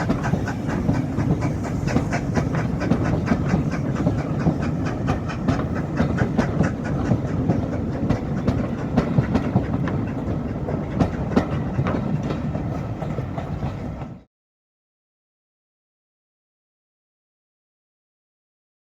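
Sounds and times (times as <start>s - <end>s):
train rumble: 0.0s - 14.3s
train wheels clicking over rail joints: 0.0s - 14.3s.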